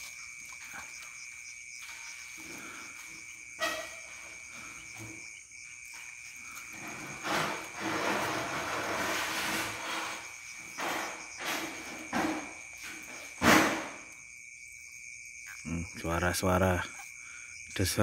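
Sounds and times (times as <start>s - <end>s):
crickets chirring: 0.0s - 18.0s
loud sharp knock: 13.4s - 14.0s
short noisy scuffs: 13.4s - 14.0s.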